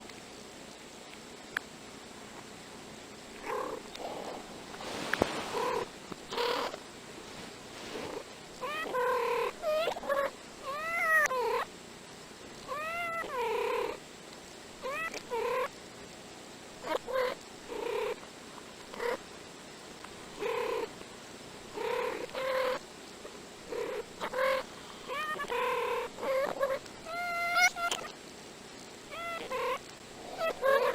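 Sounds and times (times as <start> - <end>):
reversed cat meows and chirps: 8.6 - 11.7, 12.6 - 14.0, 14.8 - 15.7, 23.8 - 28.2, 29.1 - 30.9.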